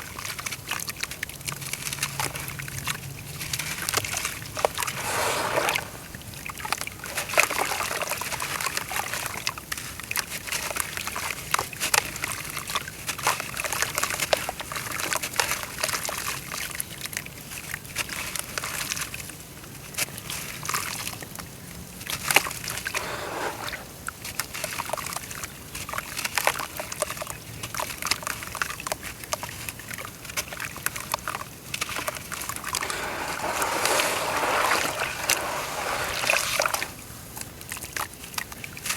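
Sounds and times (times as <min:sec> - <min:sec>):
moving water: 0:03.2 - 0:09.9, 0:22.5 - 0:24.6, 0:30.7 - 0:38.9
dirt crumbling in water: 0:04.6 - 0:06.3, 0:32.4 - 0:37.3.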